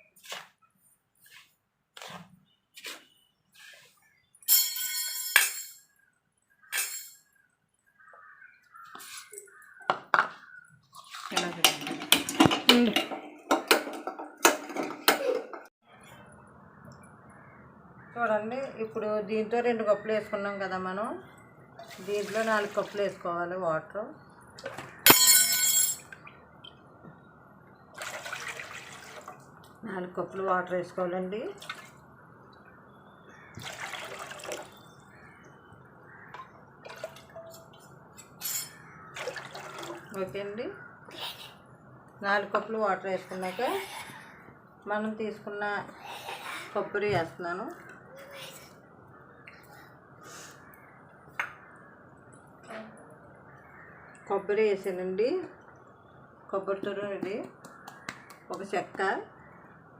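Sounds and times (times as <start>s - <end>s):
dishes and utensils clinking: 4.5s - 5.9s, 11.3s - 15.7s, 25.1s - 26.2s
water pouring into a pot: 28.0s - 29.4s, 33.6s - 34.8s, 39.1s - 40.1s.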